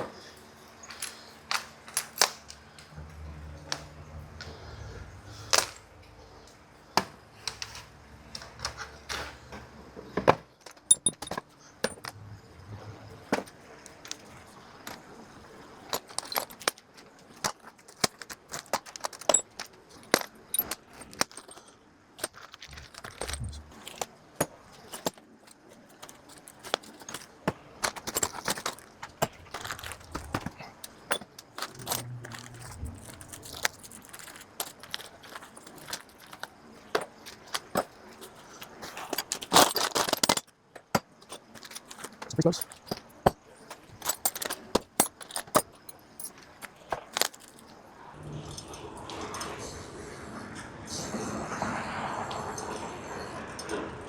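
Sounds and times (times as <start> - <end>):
small metal objects clinking: 10.5 - 47.8.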